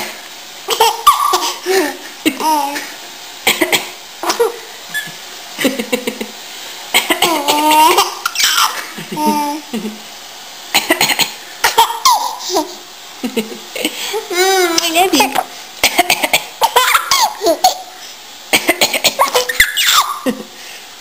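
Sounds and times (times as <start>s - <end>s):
baby laughing: 0.7s - 2.9s, 4.2s - 5.2s, 7.0s - 9.9s, 10.8s - 12.8s, 15.8s - 17.9s, 18.5s - 20.4s
woman coughing: 3.5s - 4.0s, 7.0s - 7.8s, 10.8s - 11.4s.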